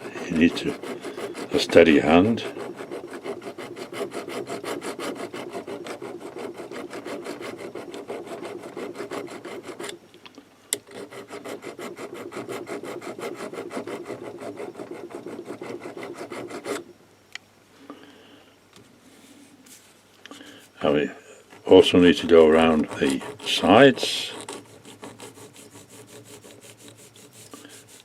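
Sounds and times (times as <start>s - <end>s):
file rasping on metal: 0.0s - 10.0s, 10.9s - 16.8s, 22.0s - 28.0s.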